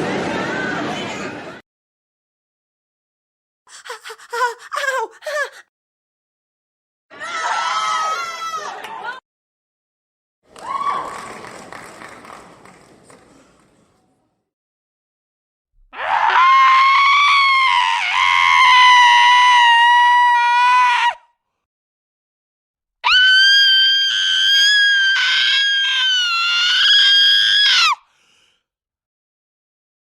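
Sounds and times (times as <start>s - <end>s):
person screaming: 3.7s - 5.6s.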